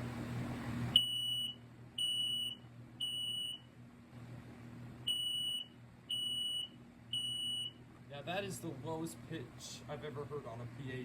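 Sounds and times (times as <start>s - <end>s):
smoke alarm beeping: 1.0s - 3.7s, 5.1s - 7.8s.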